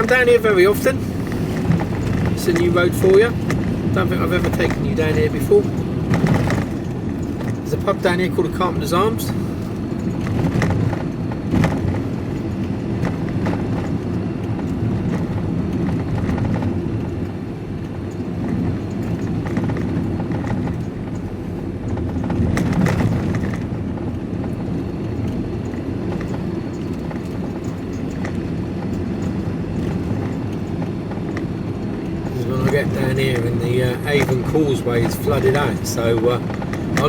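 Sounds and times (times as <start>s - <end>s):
engine and road rumble: 0.0s - 37.0s
knocks and rattles: 1.2s - 7.9s.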